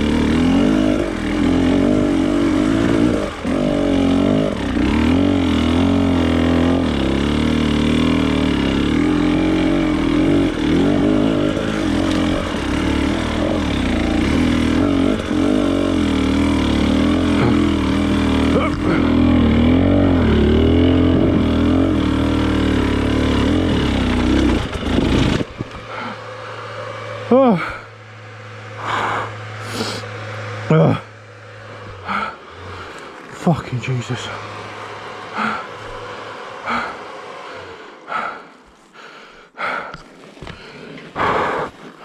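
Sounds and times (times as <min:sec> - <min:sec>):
off-road motorcycle engine revving: 0:00.0 - 0:42.0
person breathing hard and gasping: 0:25.8 - 0:26.5, 0:28.8 - 0:30.1, 0:32.0 - 0:33.0, 0:35.3 - 0:42.0.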